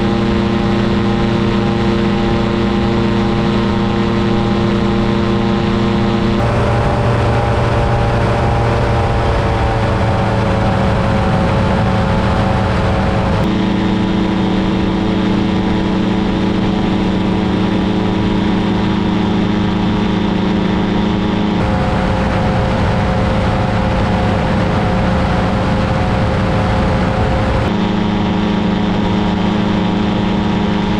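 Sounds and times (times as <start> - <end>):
paramotor engine and propeller: 0.0 - 30.9
wind noise: 0.0 - 30.9.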